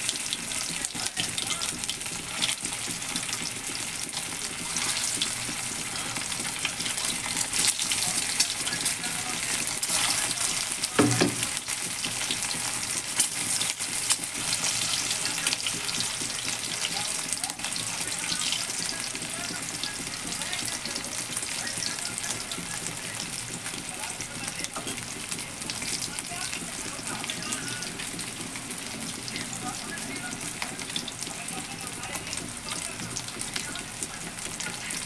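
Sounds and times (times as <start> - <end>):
food sizzling in hot oil: 0.0 - 35.0
dull knock: 11.0 - 11.4.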